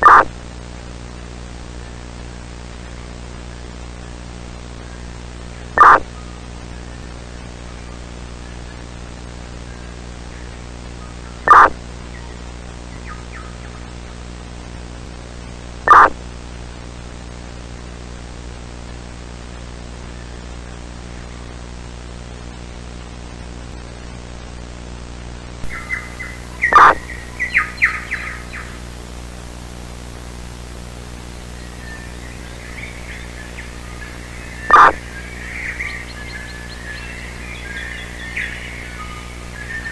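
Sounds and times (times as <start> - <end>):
static hiss and electrical hum: 0.0 - 6.1, 25.6 - 39.9
harsh bird caws: 25.7 - 39.9
quick high bird chirps: 25.7 - 39.9.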